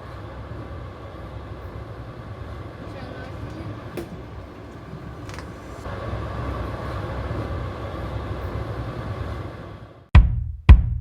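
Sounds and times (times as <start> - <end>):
vehicle rumble: 1.6 - 8.9.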